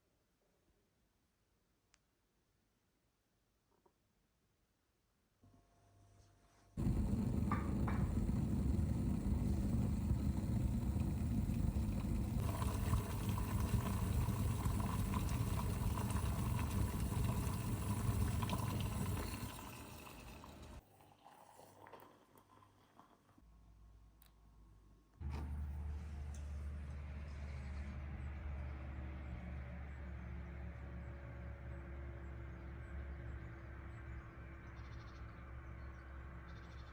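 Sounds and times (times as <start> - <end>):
water running from a tap: 6.8 - 20.8.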